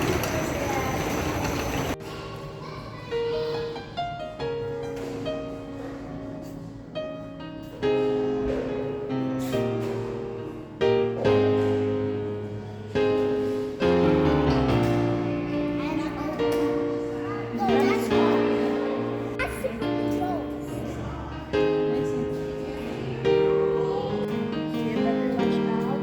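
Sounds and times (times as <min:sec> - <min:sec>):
piano slow chords: 0:00.0 - 0:26.0.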